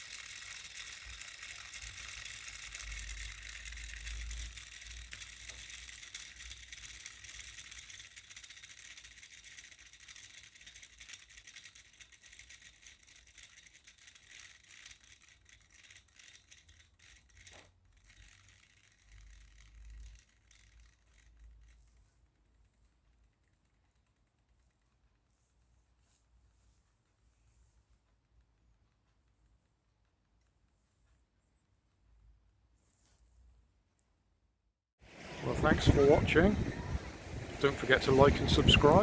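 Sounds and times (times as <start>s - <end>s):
small motor clicking and rattling: 0.0s - 25.0s, 37.6s - 39.0s.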